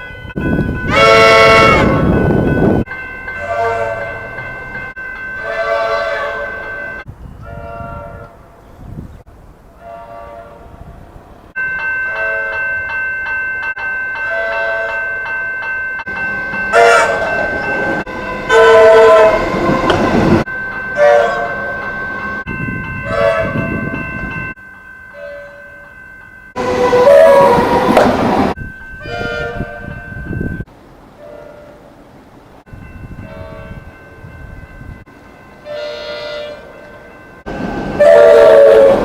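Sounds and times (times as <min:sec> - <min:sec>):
electric train horn blasts: 0:00.8 - 0:02.6, 0:03.4 - 0:04.4, 0:05.4 - 0:06.8, 0:07.4 - 0:08.4, 0:09.8 - 0:10.8, 0:16.7 - 0:20.4, 0:21.0 - 0:21.8, 0:23.0 - 0:23.7, 0:26.6 - 0:28.1, 0:29.0 - 0:30.0, 0:31.2 - 0:31.8, 0:33.2 - 0:33.9, 0:35.6 - 0:36.8, 0:37.5 - 0:39.0.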